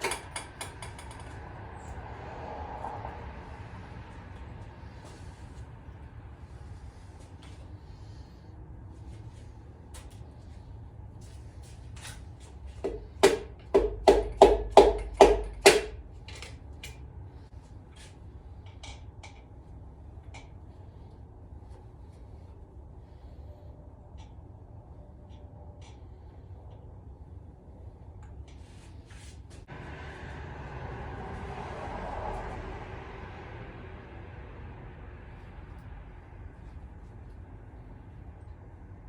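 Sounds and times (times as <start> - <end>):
sharp knocks of parts tapped: 0.0 - 1.5, 12.8 - 17.0
metal engine parts clicking: 0.0 - 1.7, 13.2 - 17.1.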